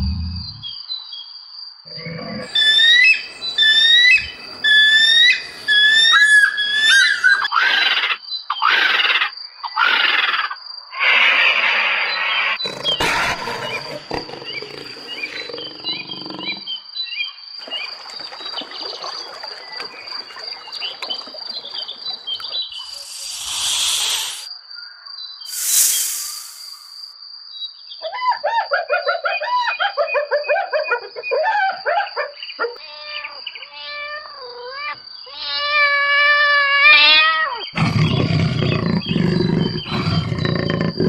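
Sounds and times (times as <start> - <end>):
rasping animal calls and growls: 11.0 - 16.7, 17.6 - 24.5, 37.8 - 41.0
short pitched animal calls: 19.3 - 24.5, 25.5 - 27.1.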